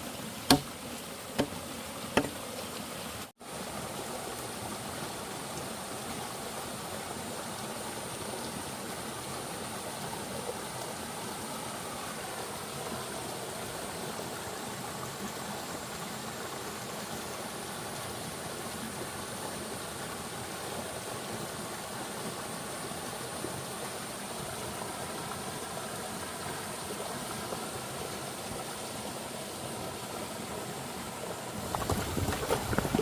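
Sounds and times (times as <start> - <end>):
stream water rushing: 0.0 - 33.0
tool striking wood: 0.5 - 0.8, 1.4 - 1.6, 2.2 - 2.4.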